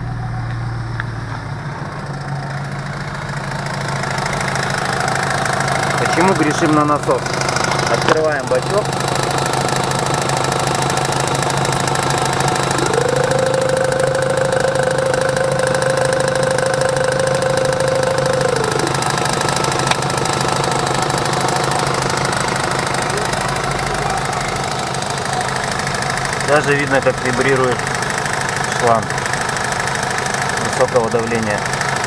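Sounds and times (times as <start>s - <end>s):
engine idling: 0.0s - 32.0s
steady whine: 2.8s - 28.2s.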